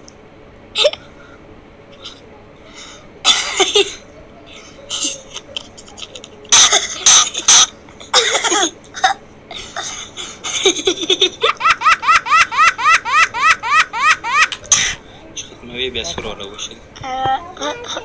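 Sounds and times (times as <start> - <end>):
bird laugh-like notes: 10.4 - 15.0.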